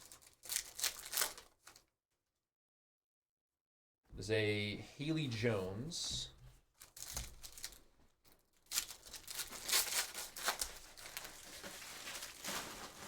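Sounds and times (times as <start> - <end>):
card pack wrappers crinkling and tearing: 0.0 - 1.8, 6.8 - 13.0.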